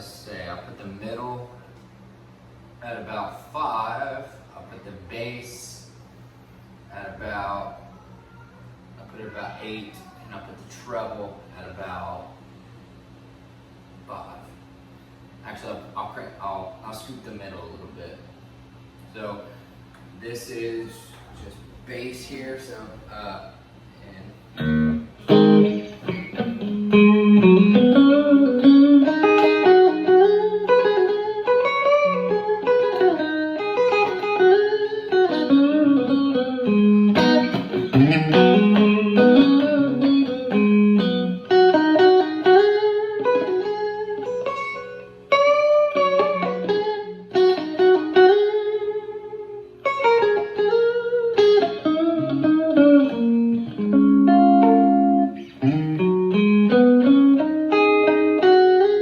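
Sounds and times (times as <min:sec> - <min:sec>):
electric guitar lead lines: 0:24.5 - 0:59.0.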